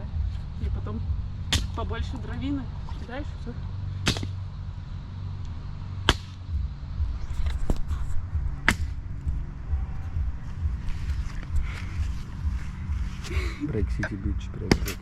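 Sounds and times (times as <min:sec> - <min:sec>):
axe chopping firewood: 0:01.5 - 0:01.8, 0:04.0 - 0:04.4, 0:06.0 - 0:06.4, 0:14.7 - 0:15.0.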